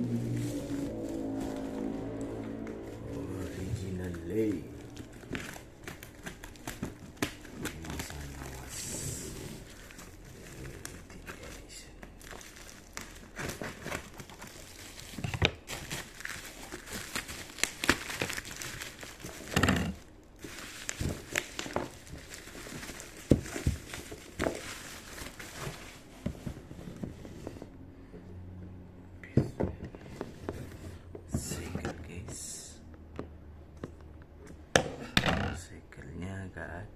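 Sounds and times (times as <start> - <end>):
packaging crinkling and rustling: 0.0 - 27.6.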